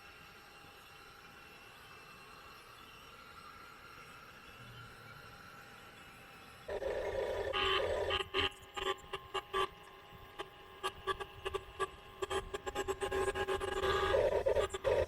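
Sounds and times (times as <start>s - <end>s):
toy excavator motors whining: 6.7s - 8.4s, 11.1s - 15.0s.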